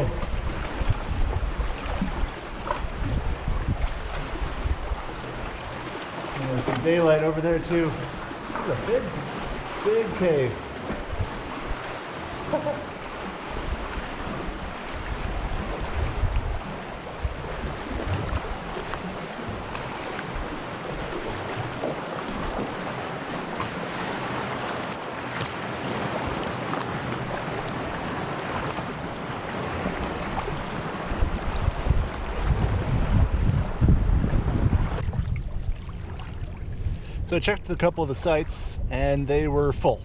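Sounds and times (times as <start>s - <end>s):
wind gusting on microphone: 0.0s - 5.8s, 8.8s - 21.7s, 29.6s - 40.0s
lake waves lapping: 0.0s - 37.2s.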